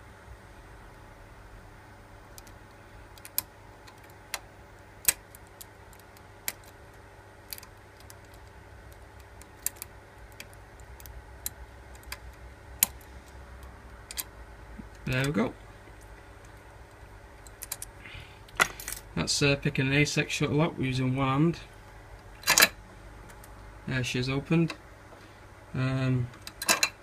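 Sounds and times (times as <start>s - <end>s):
lock pick clicking against pins: 14.0s - 14.3s, 17.4s - 17.9s.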